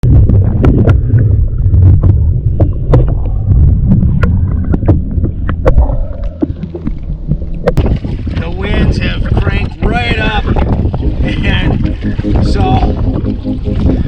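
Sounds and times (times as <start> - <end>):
gusty wind buffeting microphone: 0.0 - 14.0
waves slapping hull: 0.0 - 14.0.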